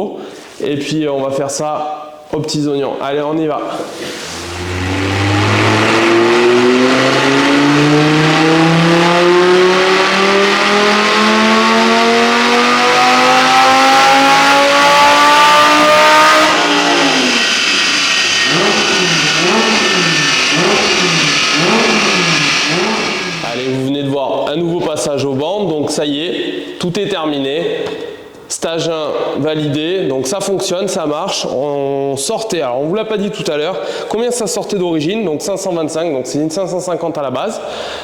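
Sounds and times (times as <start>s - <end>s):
sports car engine revving: 3.9s - 23.9s.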